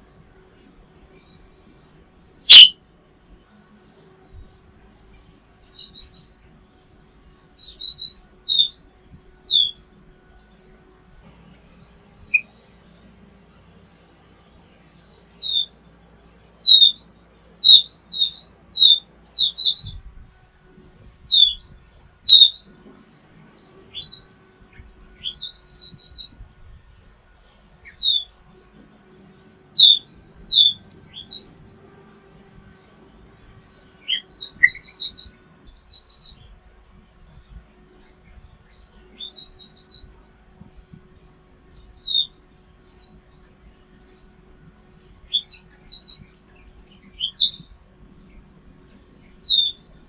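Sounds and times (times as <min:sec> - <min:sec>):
songbird chirping and whistling: 0:02.5 - 0:02.8, 0:05.6 - 0:06.3, 0:07.6 - 0:10.8, 0:11.6 - 0:12.8, 0:14.5 - 0:20.0, 0:21.3 - 0:26.4, 0:27.8 - 0:31.5, 0:33.8 - 0:36.5, 0:38.6 - 0:40.1, 0:41.7 - 0:43.2, 0:45.0 - 0:47.8, 0:49.2 - 0:50.0.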